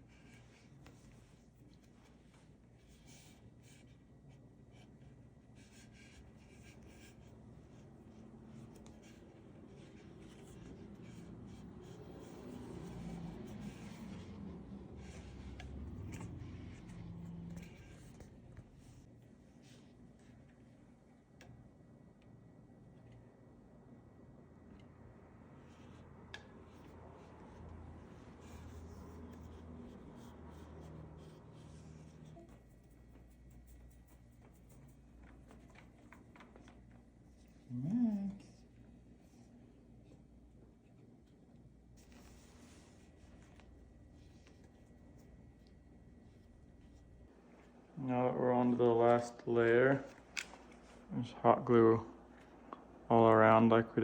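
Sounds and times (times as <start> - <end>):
cord rubbing and scraping: 5.6 - 19.9.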